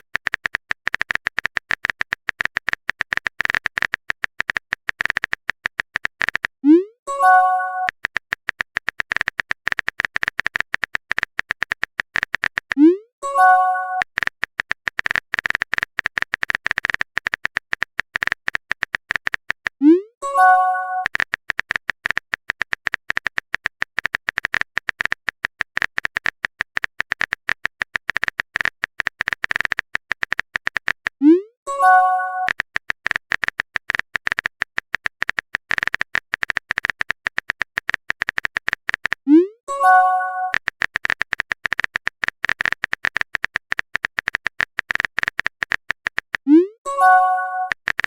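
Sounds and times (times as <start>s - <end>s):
keyboard typing clicks: 0.0s - 48.0s
brief message chime: 46.9s - 47.7s.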